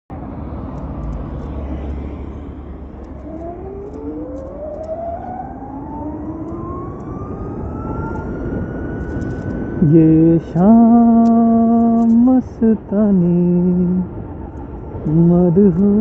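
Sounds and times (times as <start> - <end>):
road and wind rumble: 0.1 - 16.0
electric scooter motor whine: 0.4 - 12.4.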